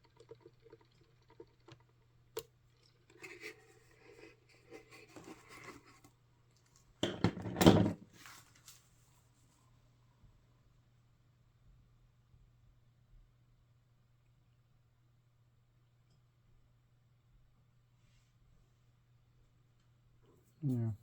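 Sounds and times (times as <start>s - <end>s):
soft rustling and scratching: 3.2s - 6.2s.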